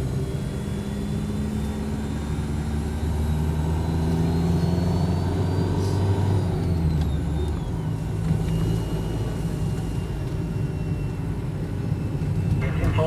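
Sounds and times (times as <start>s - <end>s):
vehicle engine: 12.1s - 13.0s
road noise: 12.2s - 13.0s.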